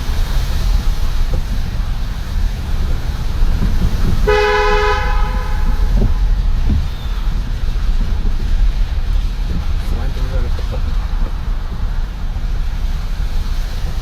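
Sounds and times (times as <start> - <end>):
car driving rumble: 0.0 - 14.0
two-tone car horn: 4.2 - 6.2.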